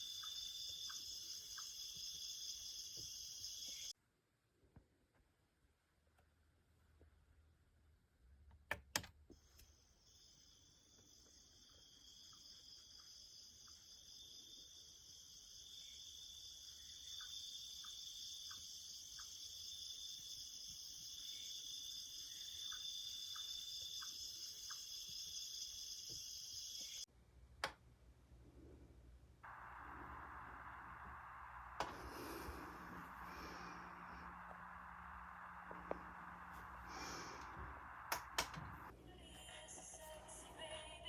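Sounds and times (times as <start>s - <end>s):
high-pitched insect-like trill: 0.0s - 3.9s, 9.7s - 27.1s
alarm clock clicks: 21.4s - 27.0s.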